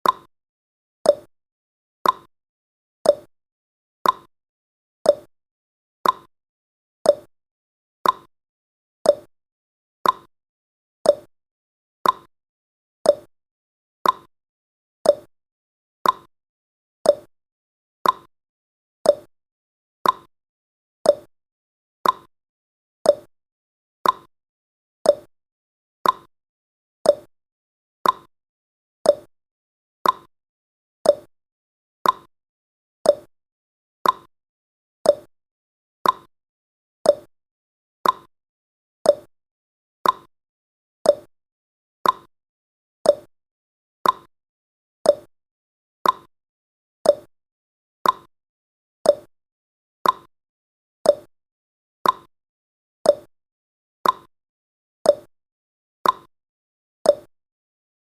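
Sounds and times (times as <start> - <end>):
clock ticking: 38.0 - 38.3, 42.0 - 42.3, 44.0 - 44.3, 50.0 - 50.3.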